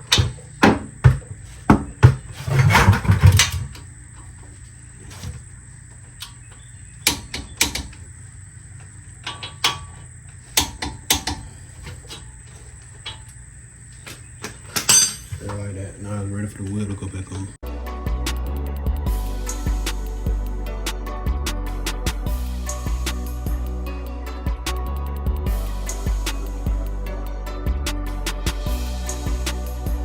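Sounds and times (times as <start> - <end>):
dull thuds: 0.0 - 3.8
hand tools clicking on metal: 6.2 - 8.0, 8.8 - 13.4, 14.1 - 15.7.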